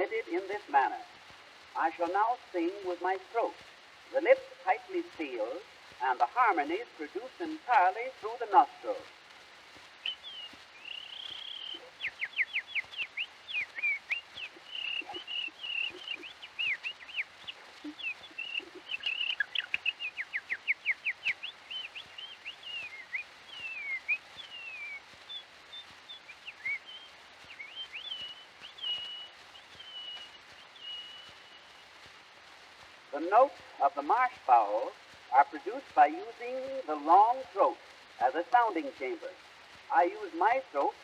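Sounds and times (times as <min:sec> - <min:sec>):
man imitating bird song: 0:13.7 - 0:16.8.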